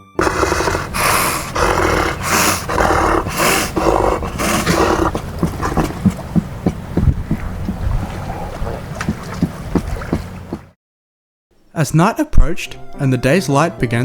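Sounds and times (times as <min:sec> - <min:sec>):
seals growling barks: 0:00.0 - 0:10.7
wind: 0:00.2 - 0:10.7.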